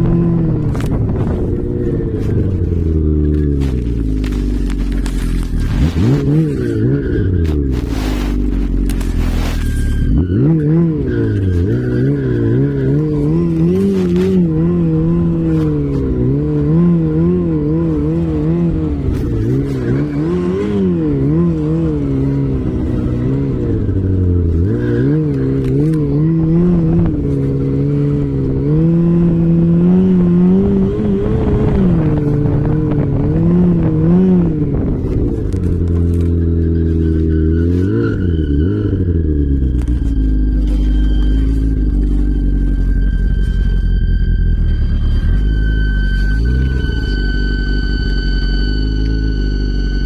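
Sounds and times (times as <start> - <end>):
off-road vehicle engine revving: 0.0 - 50.0.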